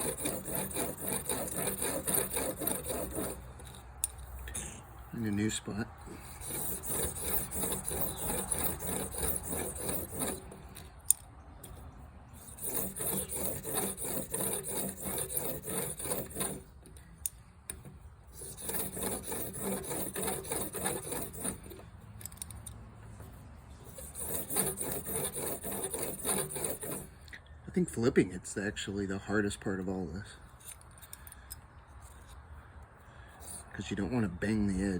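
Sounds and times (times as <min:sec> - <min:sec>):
blade scraping on sharpening stone: 0:00.0 - 0:11.8, 0:12.4 - 0:16.7, 0:18.3 - 0:22.4, 0:23.8 - 0:27.2.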